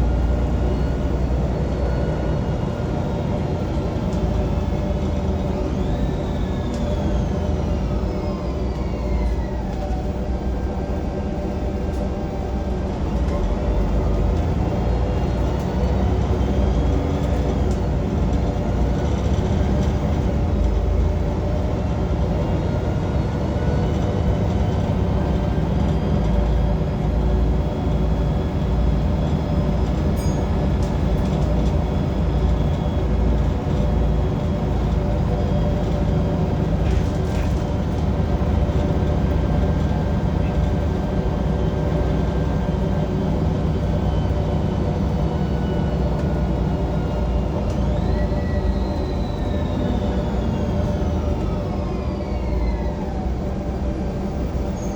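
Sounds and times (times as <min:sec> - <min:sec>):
bus engine rumble: 0:00.0 - 0:54.9
rising whines: 0:38.6 - 0:54.9.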